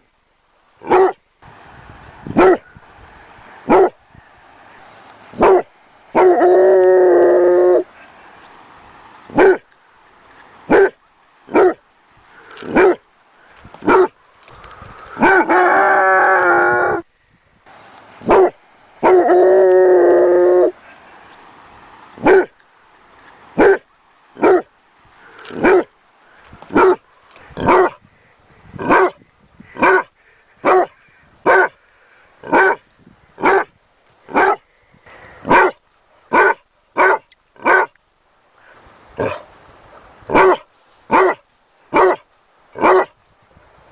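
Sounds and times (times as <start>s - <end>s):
puppy barking: 0.8s - 1.2s, 2.4s - 2.6s, 3.7s - 4.0s, 5.4s - 6.5s, 9.3s - 9.6s, 10.7s - 11.8s, 12.6s - 13.0s, 13.8s - 14.1s, 18.2s - 19.4s, 22.2s - 22.5s, 23.6s - 23.8s, 24.4s - 24.7s, 25.5s - 25.9s, 26.7s - 27.0s, 27.6s - 28.0s, 28.8s - 29.2s, 29.8s - 31.8s, 32.5s - 32.8s, 33.4s - 33.7s, 34.3s - 34.6s, 35.5s - 37.9s, 40.3s - 42.2s, 42.8s - 43.1s
puppy howling: 18.3s - 20.8s.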